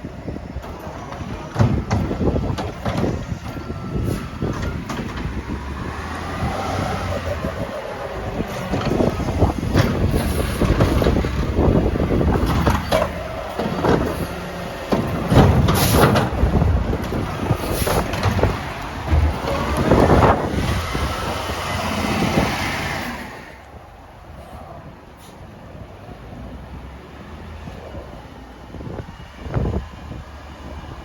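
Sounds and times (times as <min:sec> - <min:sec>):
garbage truck diesel engine: 0:00.0 - 0:31.0
metal clanks and bangs: 0:08.2 - 0:20.4.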